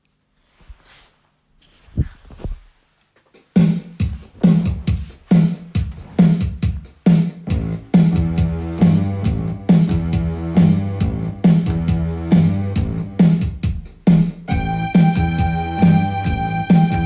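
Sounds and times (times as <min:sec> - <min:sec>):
music with steady beat: 0:03.2 - 0:17.0
low bass line: 0:07.5 - 0:13.3, 0:14.5 - 0:17.0.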